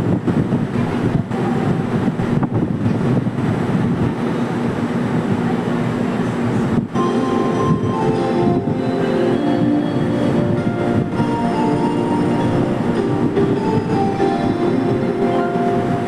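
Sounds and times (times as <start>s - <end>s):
train rumbling by: 0.0s - 16.0s.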